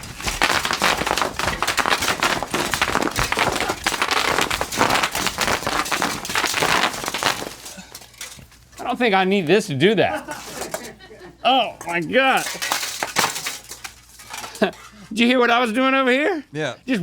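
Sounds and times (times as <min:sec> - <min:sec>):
bubble wrap popping: 0:00.0 - 0:08.7.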